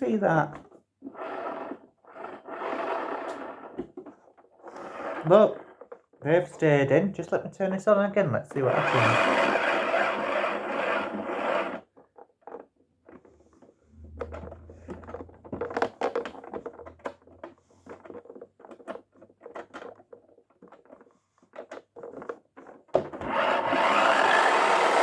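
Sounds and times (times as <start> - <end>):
toy motor whirring and rattling: 1.0 - 6.2, 8.5 - 13.2, 17.8 - 25.0
toy clicks scratches and rattles: 8.5 - 13.2, 16.1 - 25.0
brief low hum: 13.8 - 15.8.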